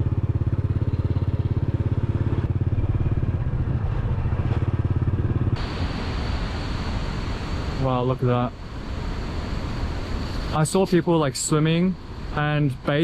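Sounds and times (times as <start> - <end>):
small motorbike engine running: 0.0 - 5.6
even rushing noise: 3.2 - 13.0.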